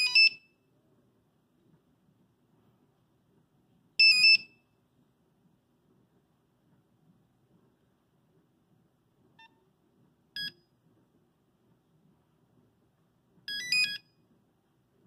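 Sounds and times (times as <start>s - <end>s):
mobile phone beeps: 0.0s - 0.5s, 4.0s - 4.6s, 10.4s - 10.6s, 13.5s - 14.1s.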